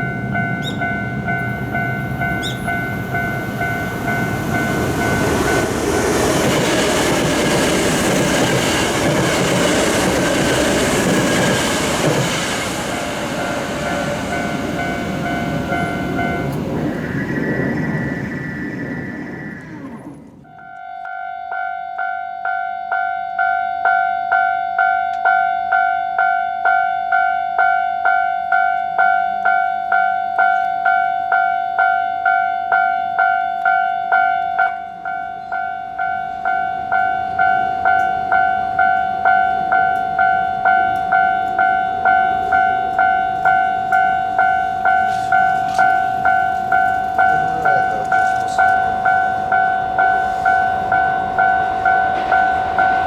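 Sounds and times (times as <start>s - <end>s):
level crossing warning bell: 0.0s - 19.6s, 20.5s - 53.0s
approaching train rumble: 0.0s - 20.6s, 35.4s - 53.0s.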